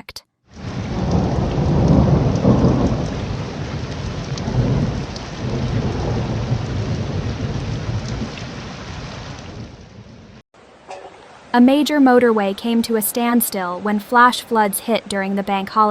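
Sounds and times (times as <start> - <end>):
rolling thunder: 0.5 - 10.4
heavy rain: 0.5 - 15.2.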